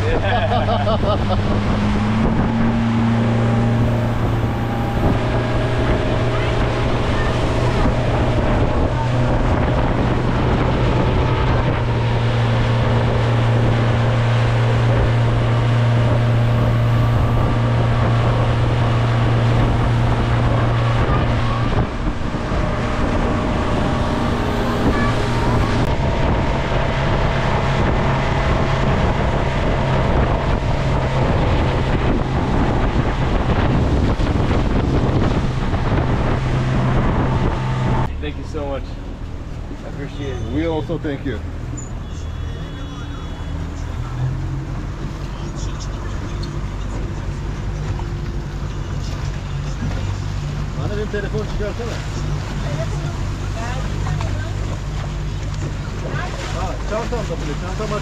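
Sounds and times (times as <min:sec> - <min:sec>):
wind on microphone: 0:00.0 - 0:41.8
boat engine droning: 0:00.0 - 0:58.0
water noise: 0:00.0 - 0:58.0.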